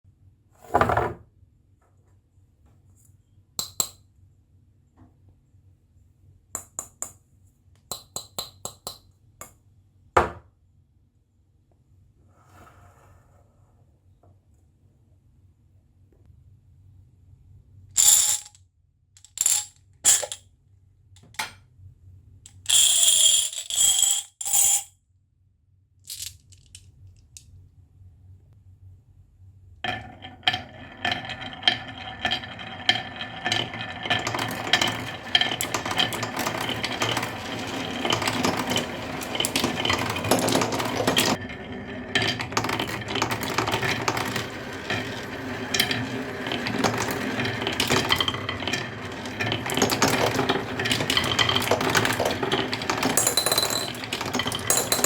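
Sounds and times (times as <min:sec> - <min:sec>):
metallic rattling and clattering: 0:29.9 - 0:55.0
small hard objects clicking: 0:34.0 - 0:41.4.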